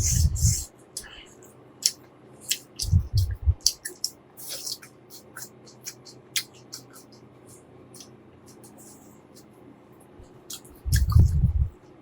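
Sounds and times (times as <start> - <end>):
wet mouth clicks and smacks: 1.8 - 7.2, 10.5 - 11.7
person chewing: 1.8 - 9.0, 10.5 - 11.5.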